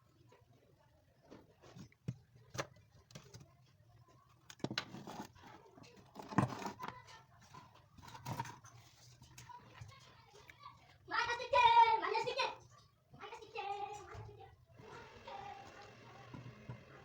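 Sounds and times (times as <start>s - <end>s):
clicks and knocks of objects handled: 1.2s - 10.7s.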